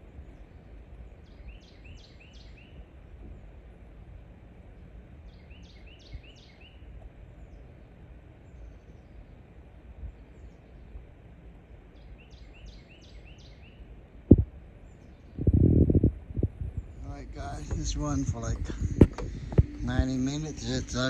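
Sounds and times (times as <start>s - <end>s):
low steady rumble: 0.0s - 21.0s
bird chirping: 0.1s - 3.5s, 5.2s - 11.0s, 12.0s - 13.9s, 16.7s - 21.0s.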